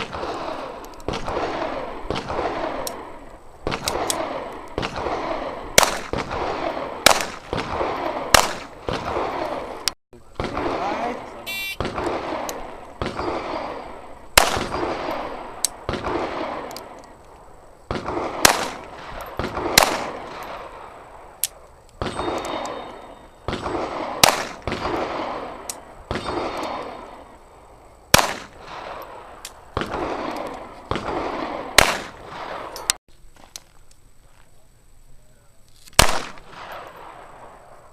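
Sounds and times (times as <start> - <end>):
handgun shots: 31.8 - 32.2.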